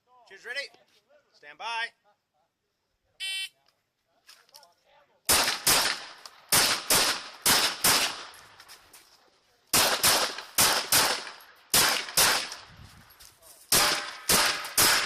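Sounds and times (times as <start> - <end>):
pistol shots: 5.3 - 8.4, 9.7 - 12.7, 13.7 - 15.0.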